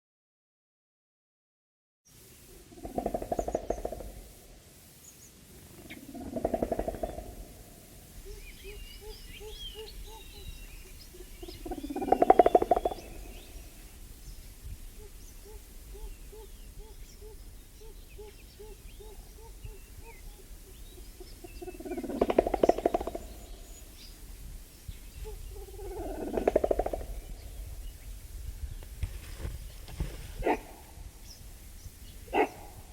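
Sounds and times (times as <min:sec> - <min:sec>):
gorilla rapid low pulses: 0:02.6 - 0:04.5, 0:05.6 - 0:08.0, 0:21.4 - 0:23.8, 0:25.4 - 0:27.7.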